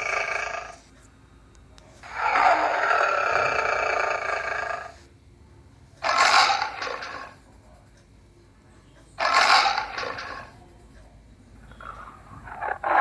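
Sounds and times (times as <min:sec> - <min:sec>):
farm animal calling: 0:09.2 - 0:10.5, 0:11.6 - 0:13.0.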